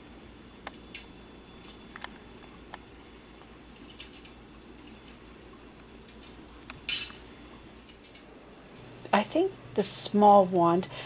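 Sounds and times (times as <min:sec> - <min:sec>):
cat toy clicks and rattles: 0:03.6 - 0:08.3.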